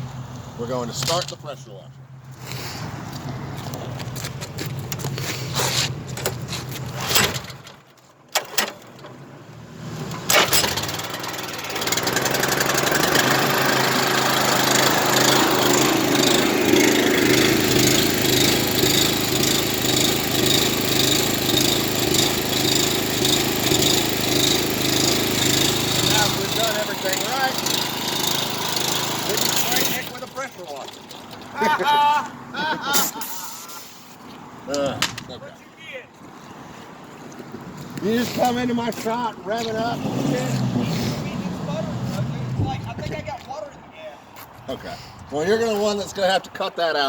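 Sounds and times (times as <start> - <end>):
small engine starting and running: 10.0 - 31.7.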